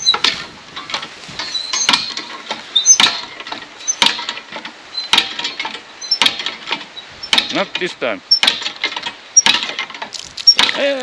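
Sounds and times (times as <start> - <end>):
hand pump handle squeaking: 0.0 - 11.0.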